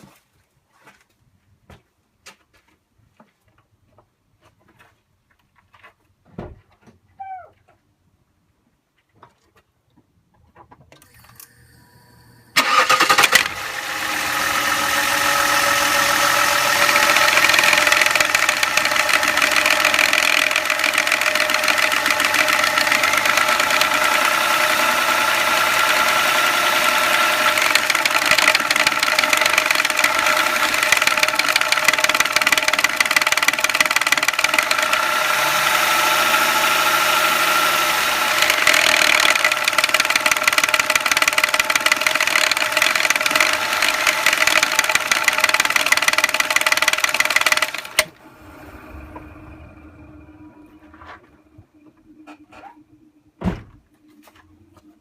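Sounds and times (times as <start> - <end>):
diesel engine cranking and starting: 11.0 - 51.8
engine idling with a rattle: 12.6 - 36.0, 36.6 - 52.6.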